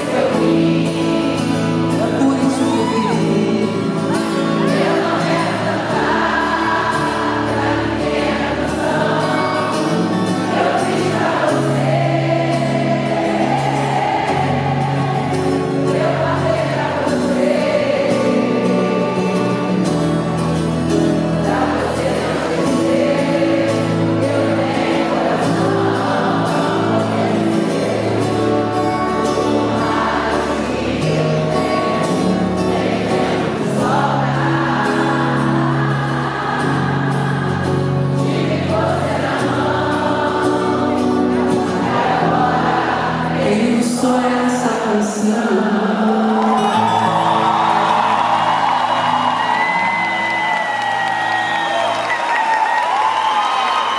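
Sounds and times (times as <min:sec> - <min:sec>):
voices singing: 0:00.0 - 0:50.2.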